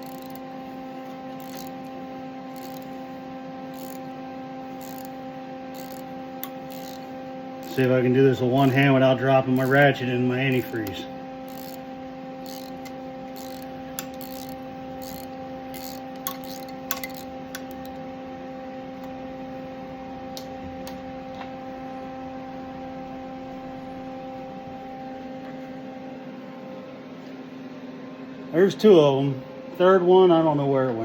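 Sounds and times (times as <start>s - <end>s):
hand ratchet clicking: 0.0s - 0.4s, 1.4s - 1.8s, 2.5s - 3.0s, 3.7s - 4.0s, 4.8s - 7.9s, 9.6s - 9.8s, 10.5s - 18.0s
steady hum: 0.0s - 31.0s.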